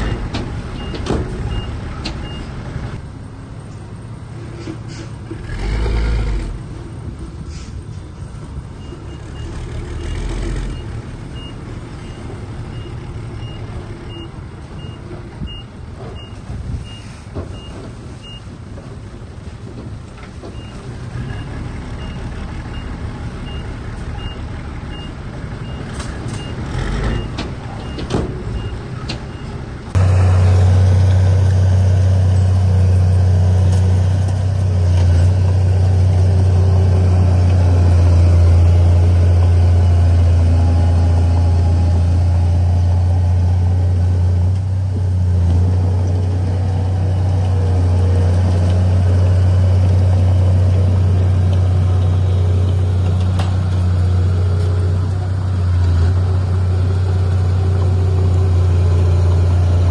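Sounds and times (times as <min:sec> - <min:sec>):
heavy machinery engine rumble: 0:00.0 - 0:59.9
deep engine drone: 0:20.9 - 0:59.9.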